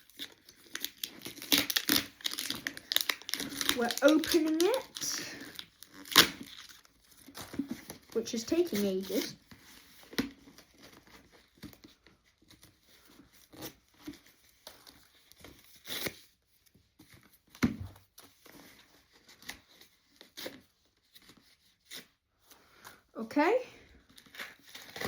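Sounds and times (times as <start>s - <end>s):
plastic packaging tearing: 0.0s - 11.8s, 12.5s - 16.3s, 24.1s - 25.0s.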